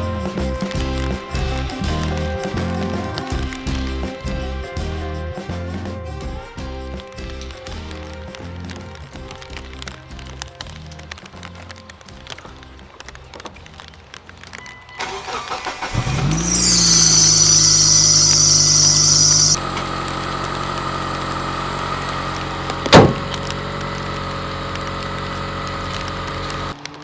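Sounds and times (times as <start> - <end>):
car engine cranking and idling: 0.6 - 4.3, 7.0 - 27.0
high hiss: 15.8 - 19.6
sharp knock: 22.9 - 23.2.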